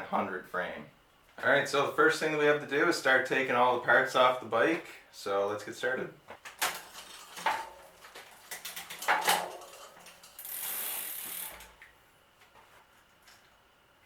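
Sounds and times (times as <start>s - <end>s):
ratchet-like clicks and knocks: 8.8s - 11.8s
short air hiss: 10.5s - 11.6s.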